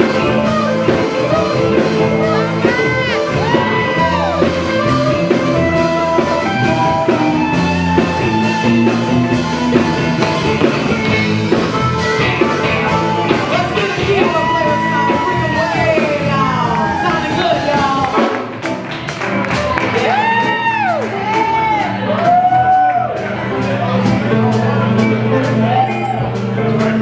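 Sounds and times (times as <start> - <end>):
rock band playing: 0.0 - 27.0.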